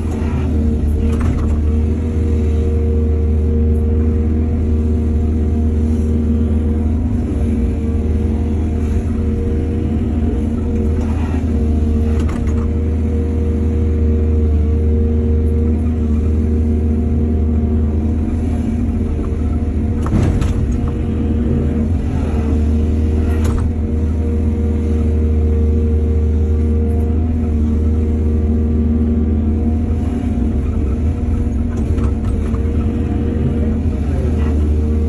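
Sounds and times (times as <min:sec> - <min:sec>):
excavator diesel engine: 0:00.0 - 0:35.0.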